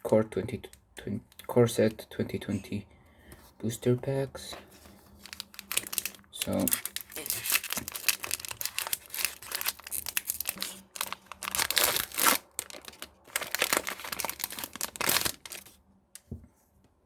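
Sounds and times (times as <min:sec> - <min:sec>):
foil wrapper crinkling and tearing: 0:05.1 - 0:15.8.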